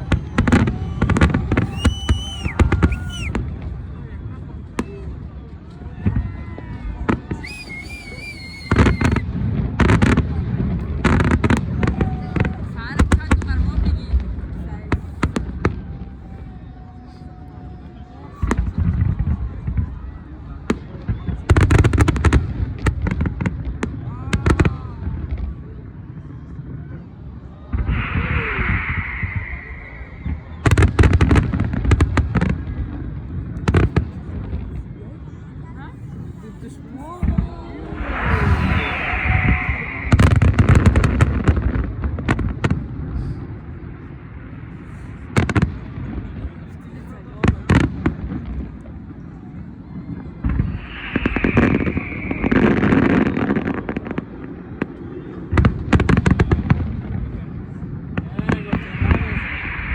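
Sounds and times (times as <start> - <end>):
firework cracks and bangs: 0.0 - 3.9, 6.0 - 16.4, 27.7 - 34.8, 37.1 - 46.6, 47.4 - 59.9
hissing firework burst: 7.3 - 9.9, 27.7 - 33.0, 37.2 - 46.2, 49.6 - 59.9
distant explosions rumbling: 27.7 - 34.7, 37.1 - 46.4, 50.0 - 59.9.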